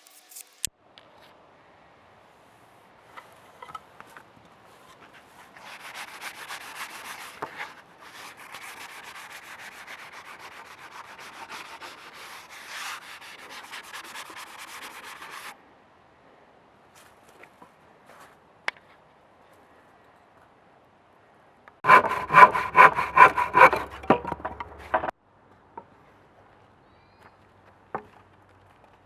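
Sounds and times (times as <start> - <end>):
handsaw cutting wood: 5.6 - 15.5, 21.8 - 24.5.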